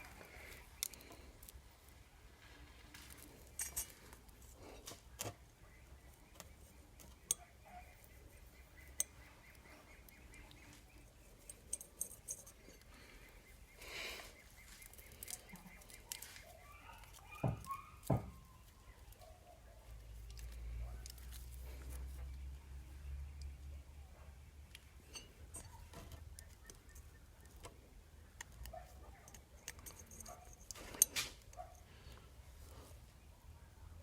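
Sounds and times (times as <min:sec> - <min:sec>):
clinks of small metal tools: 0:03.2 - 0:04.2, 0:11.4 - 0:13.0, 0:24.7 - 0:27.0, 0:29.2 - 0:31.6.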